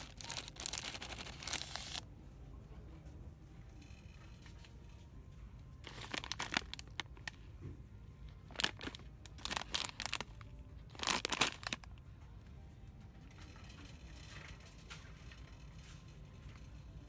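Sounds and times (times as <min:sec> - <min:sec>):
packaging crinkling: 0:00.0 - 0:02.0, 0:05.8 - 0:07.4, 0:08.4 - 0:11.9.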